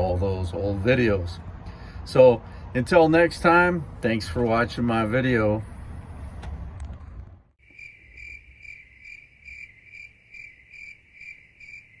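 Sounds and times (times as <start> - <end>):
crickets chirping: 7.6 - 12.0.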